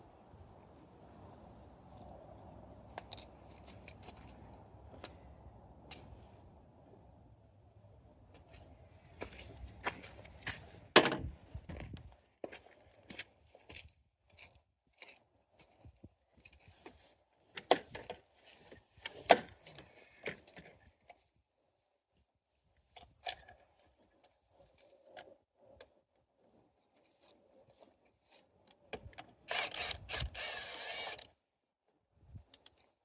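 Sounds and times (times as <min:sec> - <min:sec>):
metal tools clinking: 0:09.3 - 0:11.3.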